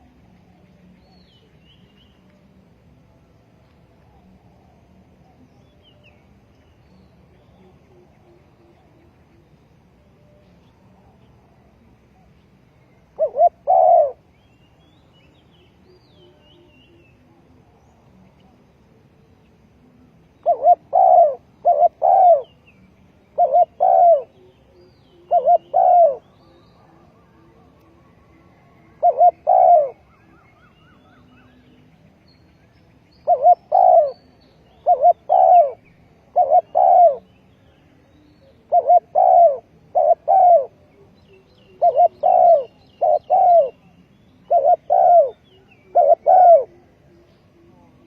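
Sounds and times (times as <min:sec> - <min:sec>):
dove cooing: 0:13.0 - 0:14.3, 0:20.4 - 0:22.6, 0:23.3 - 0:27.7, 0:28.4 - 0:31.6, 0:33.2 - 0:37.3, 0:38.4 - 0:48.0
small birds chirping: 0:29.0 - 0:48.0.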